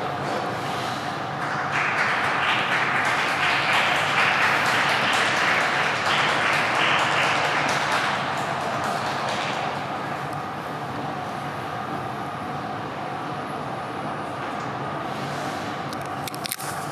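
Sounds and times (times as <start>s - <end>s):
audience applauding: 1.2s - 10.6s.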